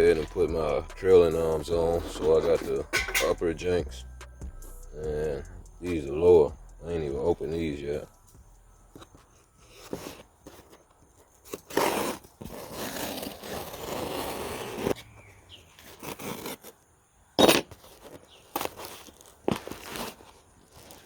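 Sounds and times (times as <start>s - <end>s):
packaging tearing and rustling: 9.6s - 15.0s, 17.7s - 21.0s
sharp ripping: 11.5s - 15.0s, 18.4s - 21.0s.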